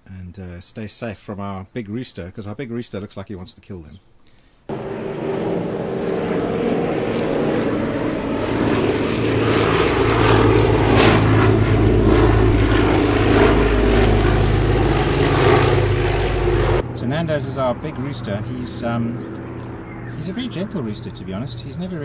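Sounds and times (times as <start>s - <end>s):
propeller airplane engines droning: 4.7s - 22.0s.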